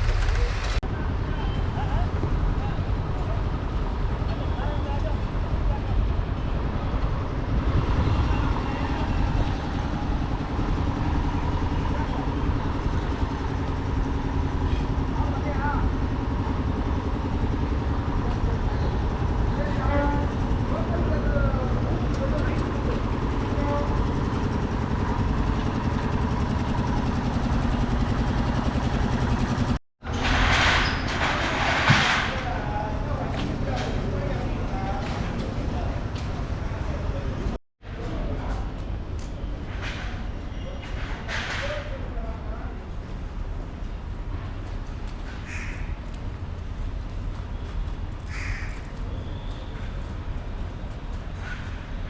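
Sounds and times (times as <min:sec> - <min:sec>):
large engine idling: 0:00.0 - 0:30.4
road traffic rumble: 0:00.0 - 0:52.0.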